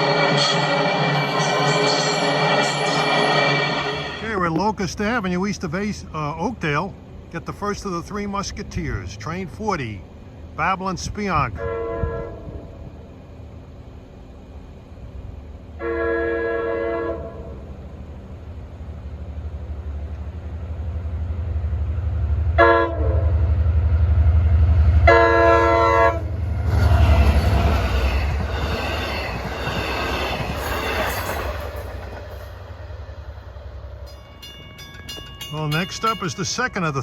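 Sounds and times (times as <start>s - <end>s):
diesel engine rumble: 4.2s - 15.8s
locomotive chime horn: 11.5s - 12.7s, 15.8s - 17.6s, 22.6s - 23.4s, 25.0s - 26.3s, 34.1s - 37.0s
train wheel clatter: 26.4s - 32.8s, 34.1s - 37.0s.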